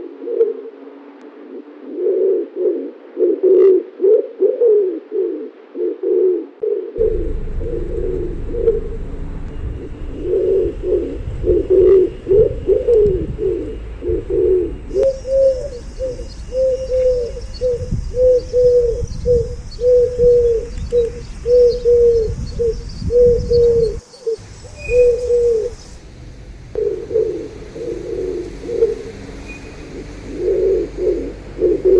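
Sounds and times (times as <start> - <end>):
pigeons cooing: 0.0 - 25.8, 26.8 - 31.9
low rumble: 7.0 - 31.9.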